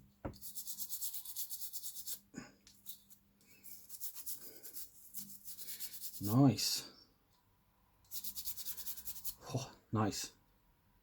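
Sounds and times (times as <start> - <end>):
toothbrush scrubbing circuit board: 0.4 - 2.2, 2.8 - 6.4, 8.1 - 9.4.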